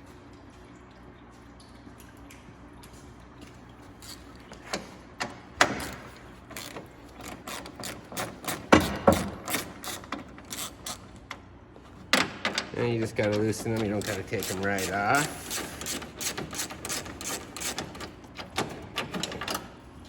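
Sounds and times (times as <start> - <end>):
metal tools clicking and clanking: 12.2 - 19.7.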